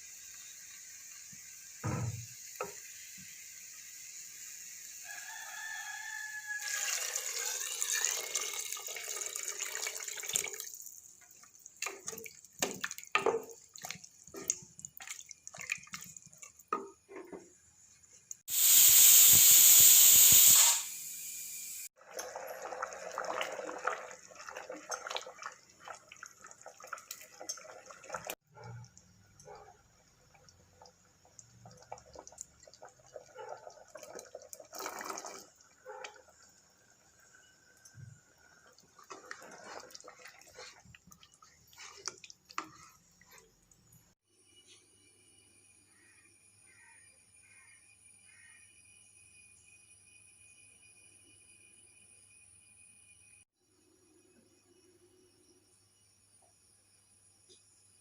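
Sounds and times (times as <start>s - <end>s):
water running and splashing: 6.7s - 16.7s, 38.3s - 43.6s.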